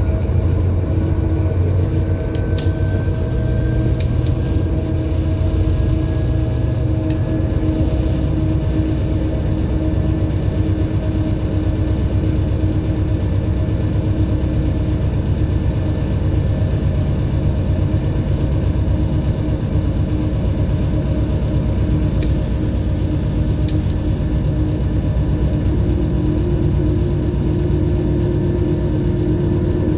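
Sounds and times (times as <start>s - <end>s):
diesel locomotive engine rumbling: 0.0s - 29.9s.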